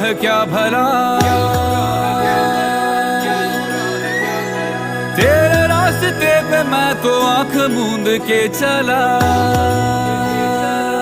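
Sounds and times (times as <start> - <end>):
held instrumental notes: 0.1 - 11.0
low drone: 1.4 - 10.6.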